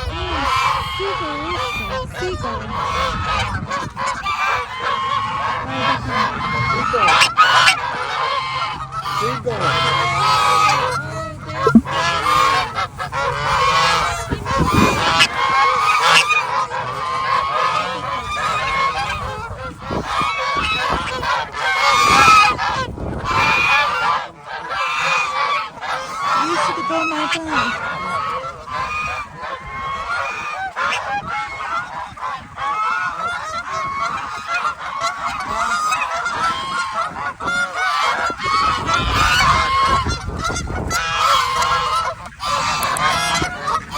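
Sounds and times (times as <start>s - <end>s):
geese honking: 0.0s - 43.9s.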